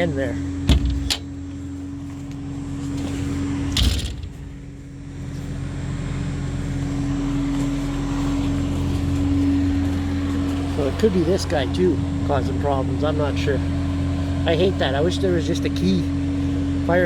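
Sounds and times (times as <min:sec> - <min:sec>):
engine idling: 0:00.0 - 0:17.0.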